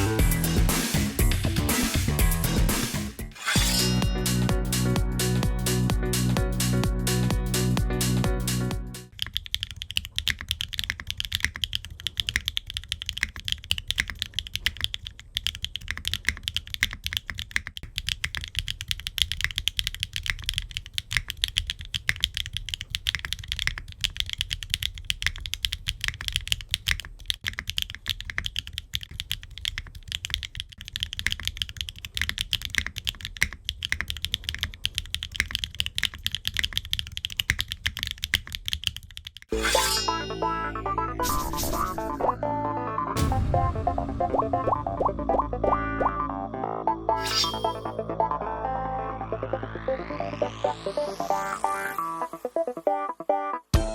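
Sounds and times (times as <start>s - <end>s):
fast typing on mechanical keyboard: 9.1s - 39.5s.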